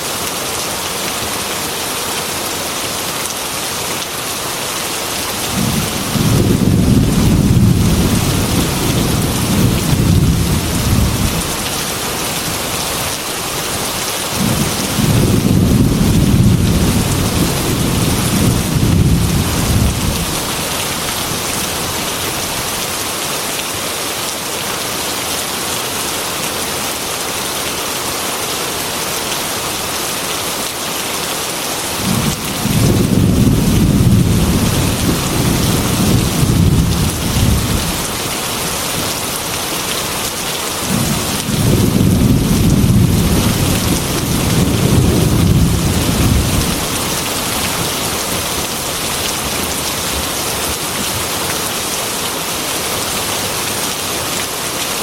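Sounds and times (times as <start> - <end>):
heavy rain on glass window: 3.3 - 24.4, 31.8 - 55.0
thunder rolling: 5.5 - 11.5, 14.4 - 20.4, 32.0 - 38.0, 40.9 - 47.0.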